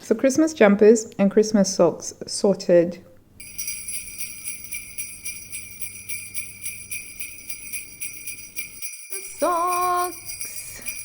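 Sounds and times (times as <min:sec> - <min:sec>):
sleigh bells jingling: 0:03.4 - 0:11.0.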